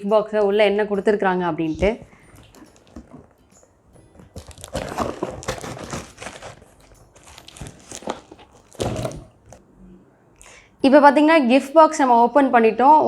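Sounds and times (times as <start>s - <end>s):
cardboard box packaging rustling: 2.0s - 9.6s.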